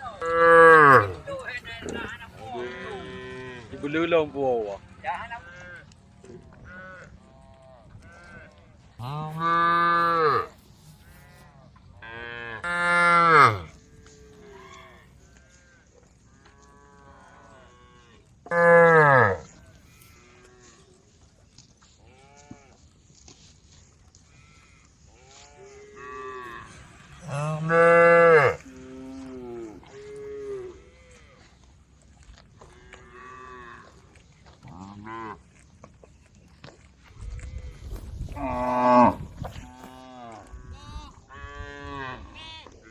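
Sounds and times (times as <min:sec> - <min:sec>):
distant cows mooing: 0:00.0 - 0:21.0, 0:24.2 - 0:31.6, 0:32.6 - 0:35.4, 0:37.3 - 0:42.8
cow mooing loudly: 0:00.2 - 0:03.9, 0:09.0 - 0:15.0, 0:16.6 - 0:20.7, 0:25.4 - 0:31.2, 0:37.5 - 0:40.6.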